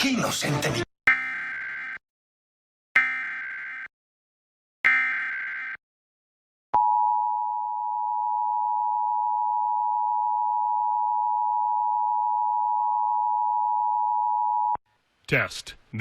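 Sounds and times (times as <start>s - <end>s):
two-tone electronic alert tone: 1.1s - 2.0s, 3.0s - 3.9s, 4.8s - 5.8s.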